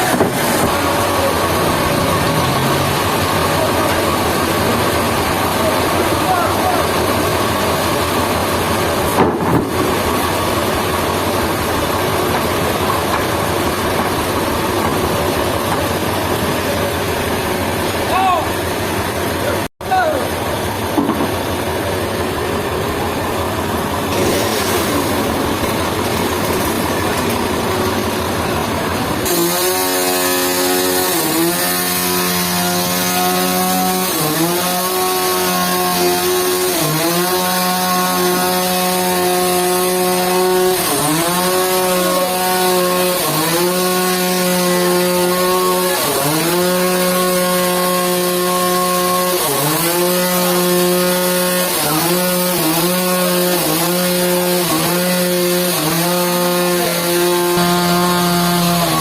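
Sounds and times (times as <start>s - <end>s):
power saw cutting wood: 0.0s - 59.0s.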